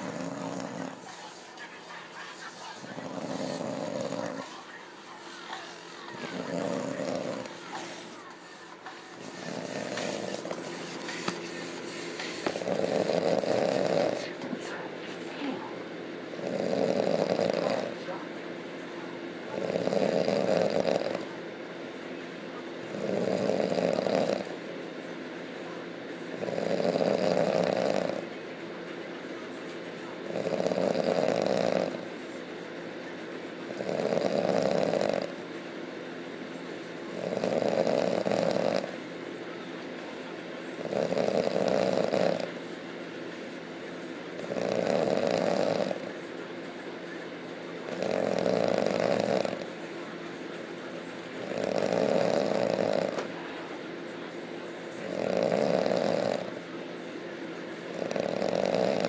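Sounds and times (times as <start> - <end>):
person snoring loudly: 0.0 - 1.0, 3.0 - 4.4, 6.3 - 7.5, 12.5 - 14.3, 16.4 - 17.9, 19.6 - 21.2, 22.9 - 24.5, 26.4 - 28.2, 30.4 - 32.0, 33.8 - 35.3, 37.2 - 38.9, 40.8 - 42.5, 44.5 - 46.0, 47.9 - 49.6, 51.4 - 53.2, 55.1 - 56.5, 58.0 - 59.0.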